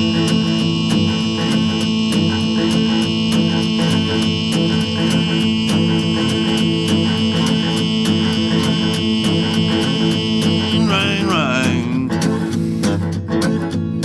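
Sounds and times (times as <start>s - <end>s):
instrumental guitar music with beat: 0.0s - 14.0s.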